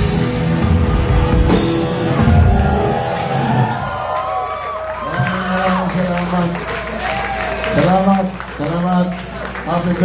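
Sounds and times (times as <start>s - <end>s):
live rock song: 0.0s - 4.0s
crowd cheering and shouting: 1.4s - 10.0s.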